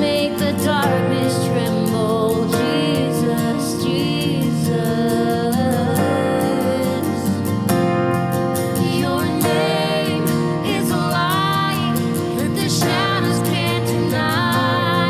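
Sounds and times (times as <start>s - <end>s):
acoustic guitar: 0.0s - 15.0s
person singing wordlessly: 8.8s - 15.0s.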